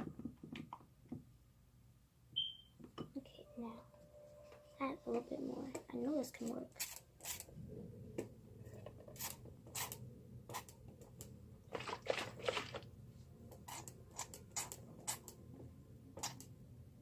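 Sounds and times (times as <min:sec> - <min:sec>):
slime squelching: 0:11.7 - 0:12.9.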